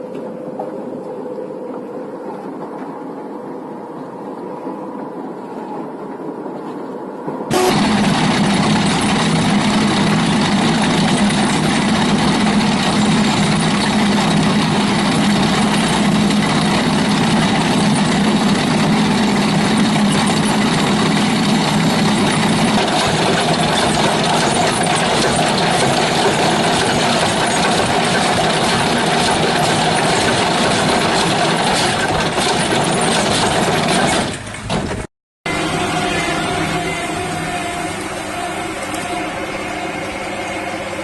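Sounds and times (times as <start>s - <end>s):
farm machine engine humming: 7.5s - 34.7s, 35.5s - 41.0s.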